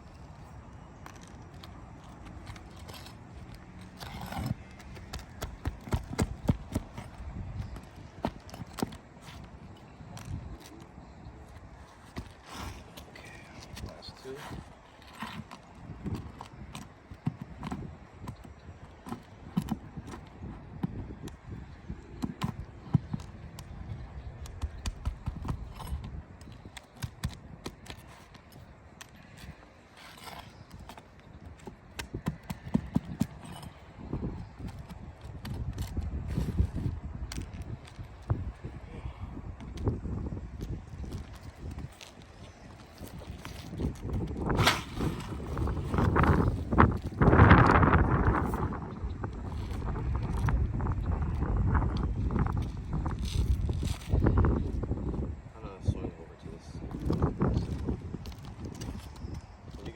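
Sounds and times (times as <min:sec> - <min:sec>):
scraping rustle: 0:00.0 - 0:17.8, 0:25.2 - 0:31.8, 0:39.7 - 0:54.8.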